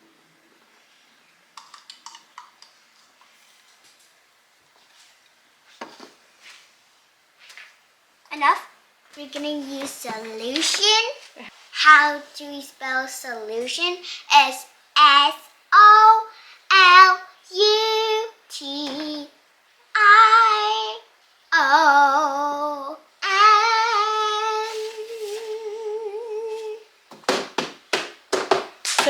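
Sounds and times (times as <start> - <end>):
girl singing letters: 8.3 - 27.0.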